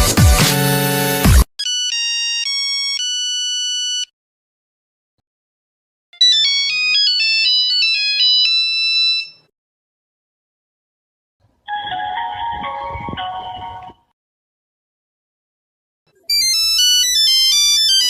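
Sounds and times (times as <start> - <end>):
phone melody of beeping notes: 11.7 - 14.0.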